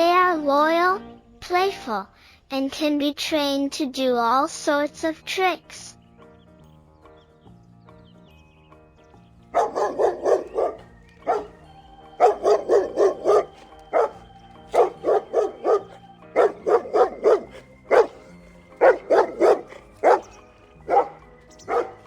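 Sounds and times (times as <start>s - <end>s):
background music: 0.0s - 22.0s
dog barking: 9.5s - 22.0s.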